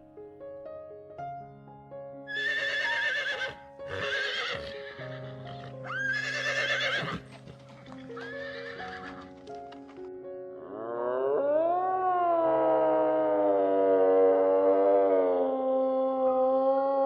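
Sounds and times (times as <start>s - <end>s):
slow background music: 0.0s - 17.0s
horse whinnying: 2.3s - 9.4s.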